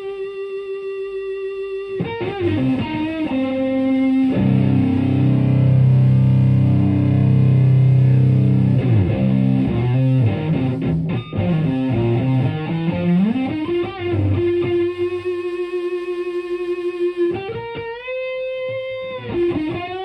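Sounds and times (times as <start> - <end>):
distorted electric guitar: 0.0 - 20.0.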